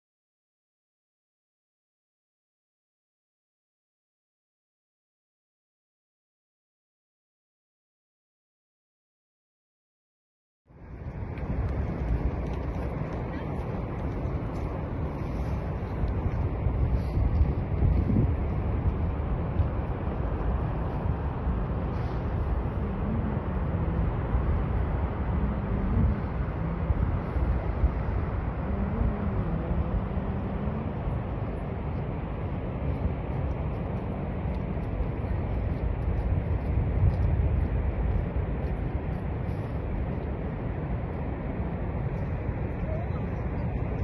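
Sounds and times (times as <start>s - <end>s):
waterfall rumbling: 11.0s - 44.0s.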